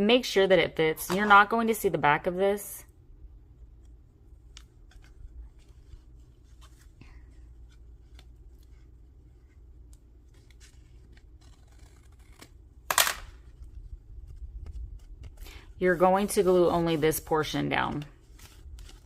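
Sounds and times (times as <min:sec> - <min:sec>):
loud scratchy paper rustle: 0:10.2 - 0:12.6.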